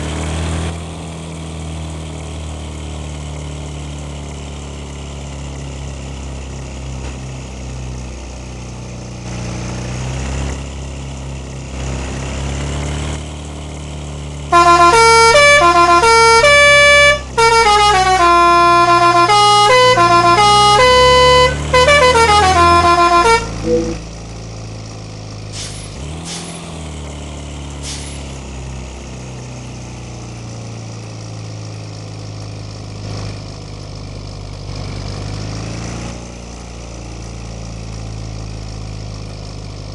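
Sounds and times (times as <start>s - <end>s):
diesel bus engine running: 0.0s - 39.9s
bus musical horn tune: 14.5s - 24.1s
short sharp sounds: 20.0s - 24.0s.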